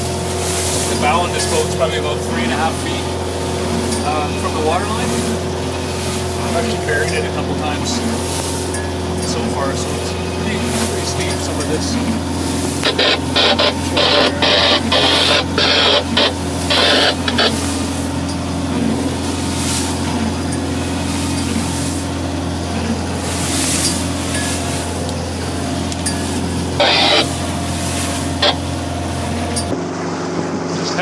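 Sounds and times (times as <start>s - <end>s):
boat diesel engine droning: 0.0s - 31.0s
bursts of hiss: 12.8s - 17.7s, 26.8s - 28.7s.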